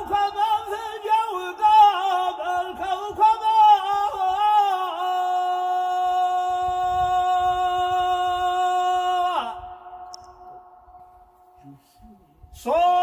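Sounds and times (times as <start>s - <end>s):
man singing unaccompanied: 0.0s - 9.7s, 12.6s - 13.0s.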